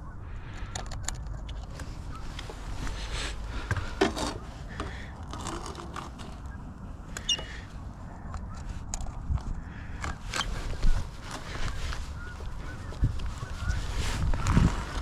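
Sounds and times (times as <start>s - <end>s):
low wind rumble on microphone: 0.0s - 15.0s
scraping and rubbing: 1.2s - 6.6s, 8.6s - 15.0s.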